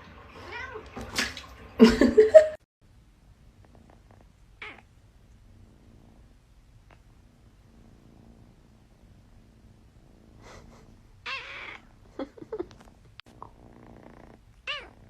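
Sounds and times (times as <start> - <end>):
cat meowing: 4.6 - 4.9, 11.2 - 11.9, 14.6 - 15.0.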